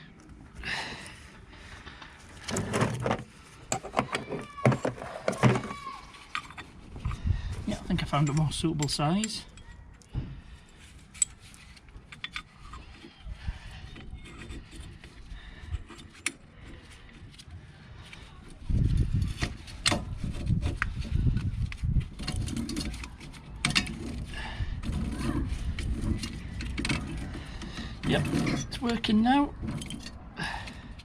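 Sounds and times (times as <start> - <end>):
grinding and creaking of tool: 0.0 - 31.0.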